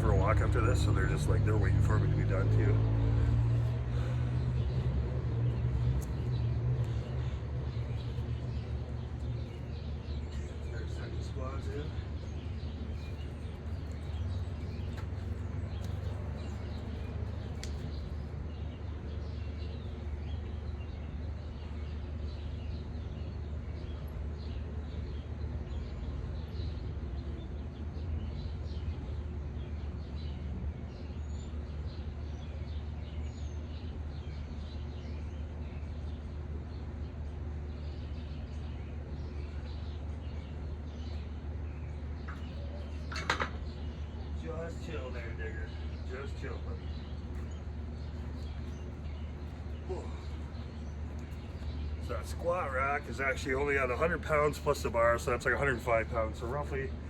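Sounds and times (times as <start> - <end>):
low outdoor rumble: 0.0 - 57.0
small birds chirping: 0.0 - 57.0.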